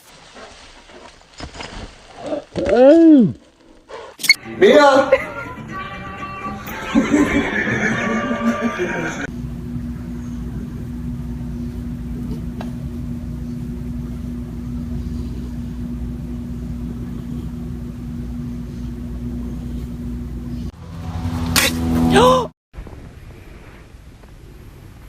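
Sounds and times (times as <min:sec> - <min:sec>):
low motor rumble: 0:07.0 - 0:25.0.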